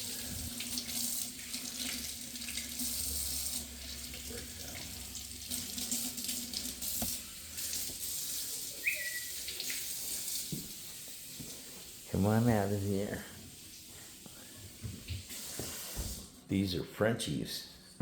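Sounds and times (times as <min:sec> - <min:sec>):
tap water splashing in sink: 0:00.0 - 0:08.2, 0:09.4 - 0:11.6, 0:14.8 - 0:16.3.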